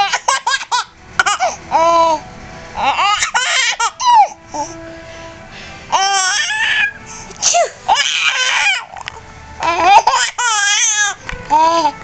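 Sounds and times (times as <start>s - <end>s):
baby squealing laughter: 0.0s - 2.2s, 2.8s - 4.4s, 5.9s - 9.0s, 9.6s - 11.2s.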